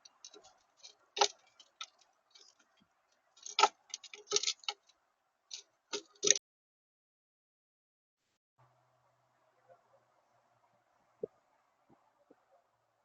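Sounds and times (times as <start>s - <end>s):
birds pecking at a feeder: 0.0s - 6.4s.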